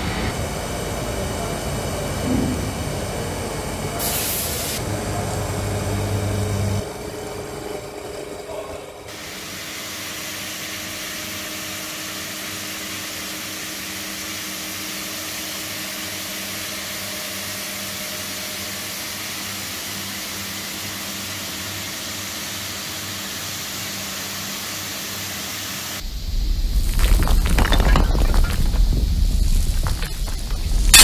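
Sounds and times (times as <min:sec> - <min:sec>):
louder deeper machine sound: 0:00.0 - 0:03.8.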